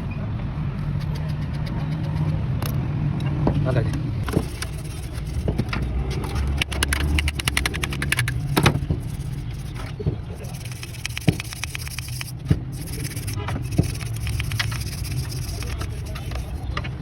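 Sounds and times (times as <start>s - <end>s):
car engine running: 4.1s - 17.0s
rapid clicks: 4.2s - 17.0s.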